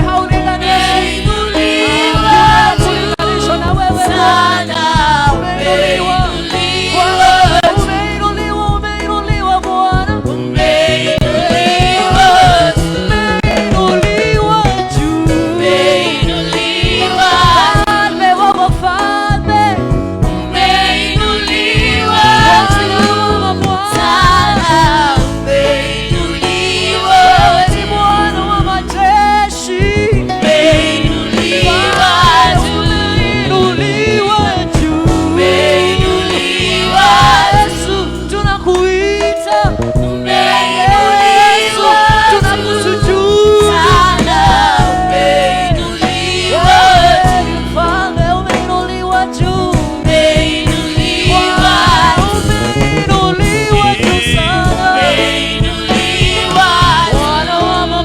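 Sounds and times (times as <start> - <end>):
instrumental accompaniment: 0.0 - 58.0
voices singing gospel music: 0.0 - 58.0.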